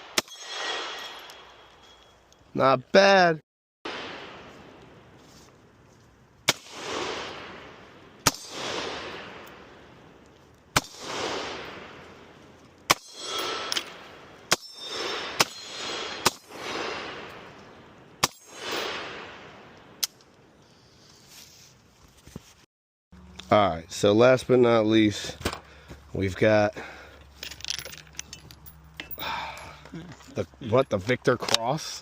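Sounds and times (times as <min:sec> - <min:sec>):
gunshots with rolling echo: 0:03.9 - 0:04.8, 0:06.5 - 0:10.0, 0:10.7 - 0:12.1, 0:12.9 - 0:17.6, 0:18.2 - 0:20.0.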